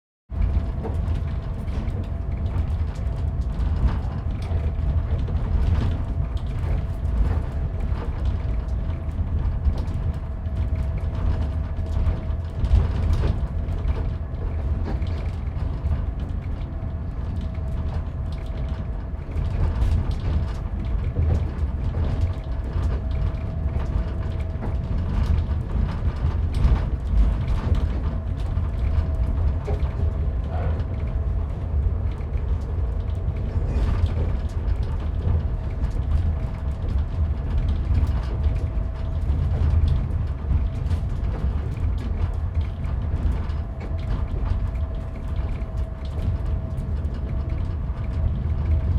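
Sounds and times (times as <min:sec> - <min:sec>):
rattles and creaks: 0:00.3 - 0:48.9
train carriage rumble: 0:00.3 - 0:48.9.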